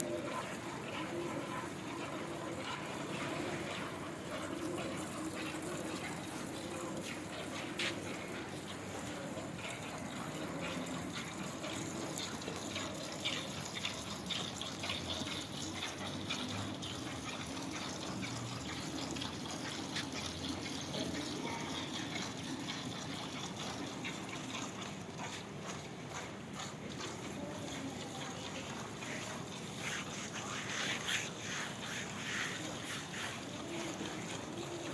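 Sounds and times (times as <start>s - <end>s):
milk squirting into a pail: 0.0s - 34.9s.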